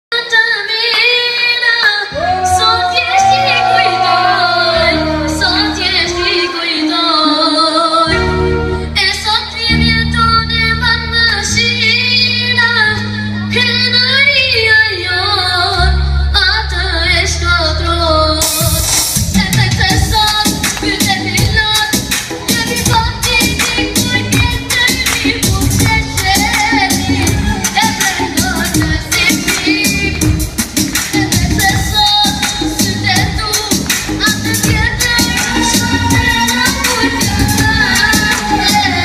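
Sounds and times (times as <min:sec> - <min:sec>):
instrumental backing with bass: 0:02.1 - 0:39.0
child singing: 0:09.0 - 0:18.5, 0:19.3 - 0:30.2, 0:31.1 - 0:39.0.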